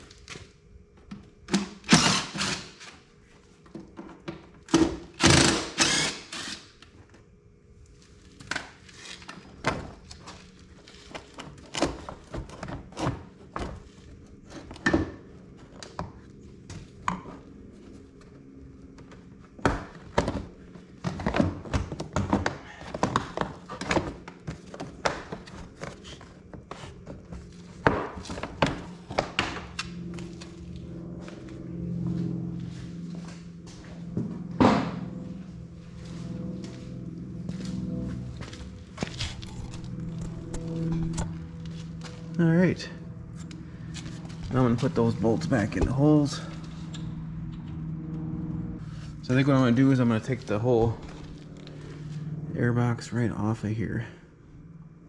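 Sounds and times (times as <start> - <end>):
knocks and clunks of parts: 39.0 - 42.1.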